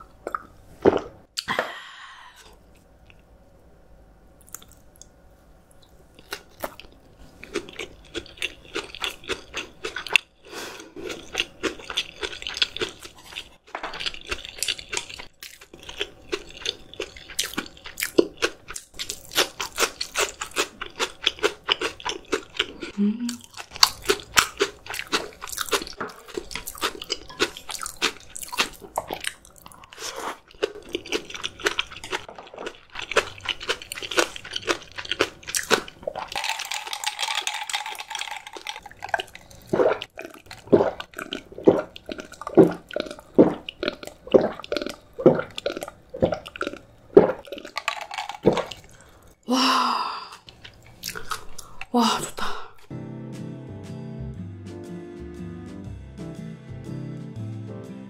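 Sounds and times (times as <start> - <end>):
crunchy chewing: 6.2 - 49.2.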